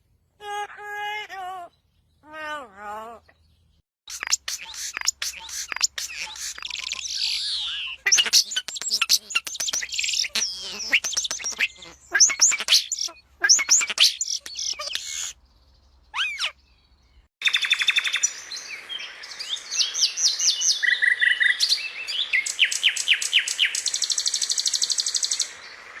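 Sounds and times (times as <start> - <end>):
songbirds chirping: 0.0 - 26.0
bird trills: 4.1 - 15.4.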